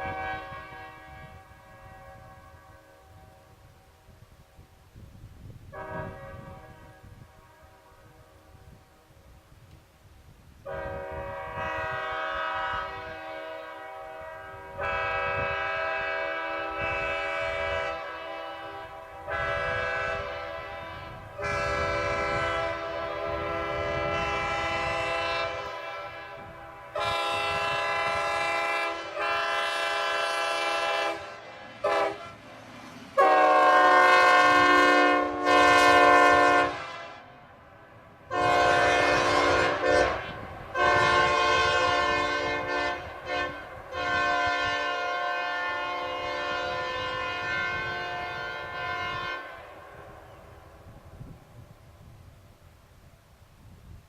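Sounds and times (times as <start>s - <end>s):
locomotive air horn blasts: 0.0s - 3.8s, 5.7s - 9.1s, 10.6s - 32.4s, 33.2s - 37.5s, 38.3s - 51.3s
lower-pitched horn chord: 33.2s - 37.4s.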